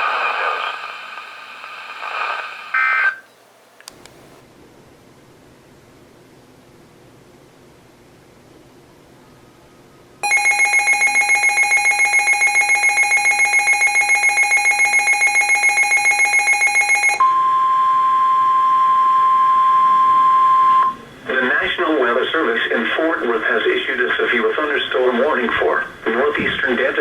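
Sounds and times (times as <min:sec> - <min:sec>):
faint static hiss: 0:00.0 - 0:05.2
pulsing buzzing alarm tone: 0:10.2 - 0:20.9
steady single-pitch alarm tone: 0:10.2 - 0:21.0.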